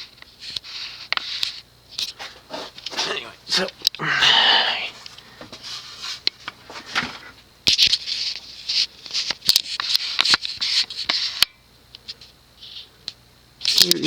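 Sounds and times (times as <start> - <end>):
rustling and scraping: 2.0 - 3.9, 4.9 - 7.4.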